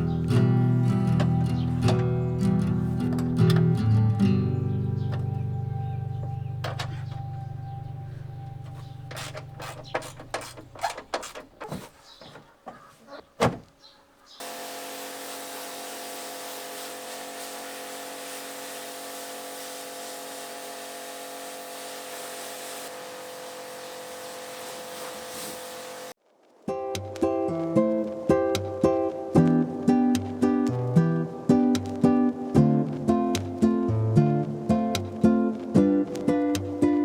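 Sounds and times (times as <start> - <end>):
sharp knocks and clicks: 1.0 - 3.8, 6.2 - 7.4.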